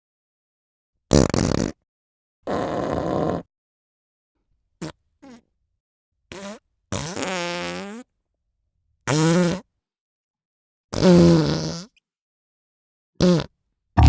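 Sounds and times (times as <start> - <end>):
farts: 1.1 - 1.8, 2.5 - 3.5, 6.3 - 8.1, 9.1 - 9.7, 10.9 - 12.0, 13.2 - 13.5.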